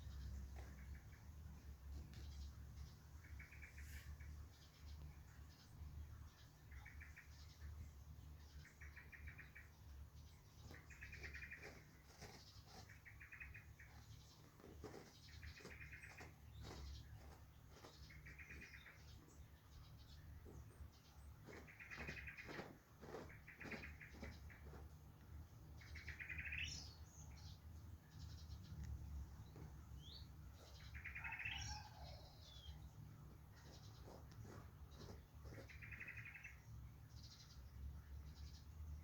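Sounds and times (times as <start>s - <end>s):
rustling: 10.6s - 18.7s, 21.3s - 25.0s, 33.2s - 36.0s.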